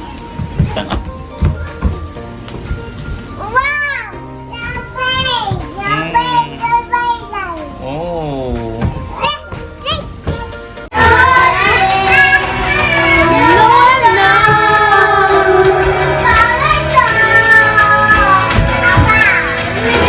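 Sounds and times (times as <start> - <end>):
song with singing voice: 10.9 - 20.0.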